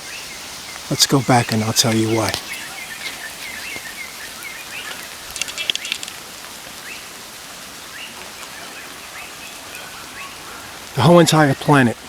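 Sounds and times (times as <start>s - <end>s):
faint bird chirps: 0.0s - 6.1s
crackling rustles: 0.0s - 12.0s
steady hiss: 0.0s - 12.0s.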